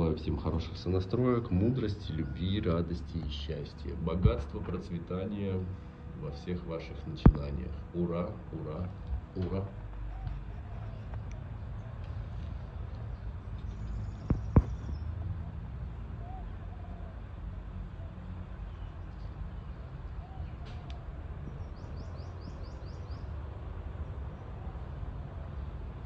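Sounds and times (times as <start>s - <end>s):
low outdoor rumble: 0.0s - 26.0s
faint bird chirps: 10.0s - 12.0s.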